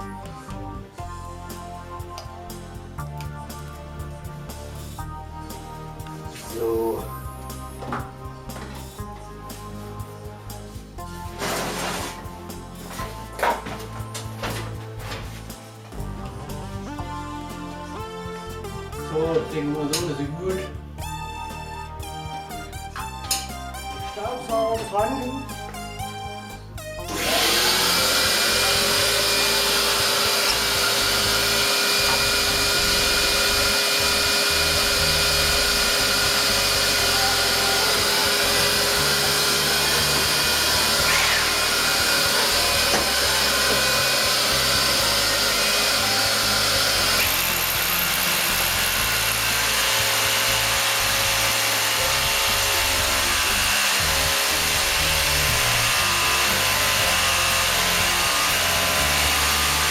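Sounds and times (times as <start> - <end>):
vacuum running: 27.0 - 59.9
rotary hammer drilling concrete: 27.1 - 59.9.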